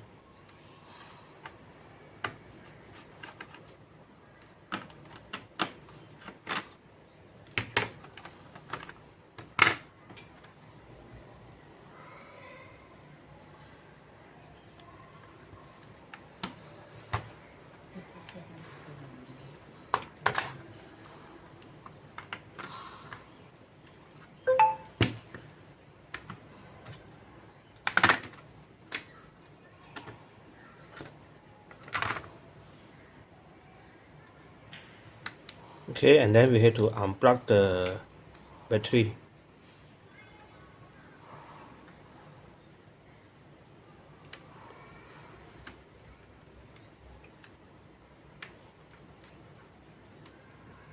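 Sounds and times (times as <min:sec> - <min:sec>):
laptop parts clicking and knocking: 0:02.2 - 0:03.8, 0:04.4 - 0:06.8, 0:07.4 - 0:10.6, 0:16.1 - 0:17.4, 0:19.9 - 0:20.6, 0:27.8 - 0:29.2.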